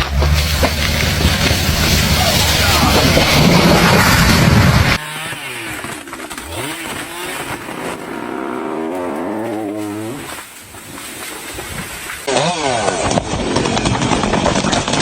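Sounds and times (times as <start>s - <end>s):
small engine running: 0.1s - 10.4s.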